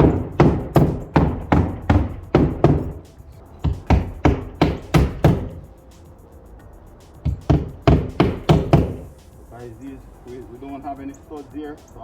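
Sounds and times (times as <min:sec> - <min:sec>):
hand tool knocking on stone: 0:00.0 - 0:03.0, 0:03.6 - 0:05.6, 0:07.2 - 0:09.1.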